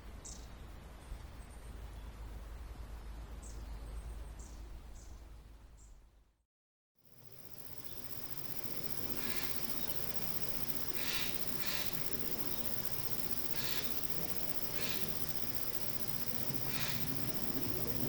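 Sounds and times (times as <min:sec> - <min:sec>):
steady background hiss: 0:07.1 - 0:18.0.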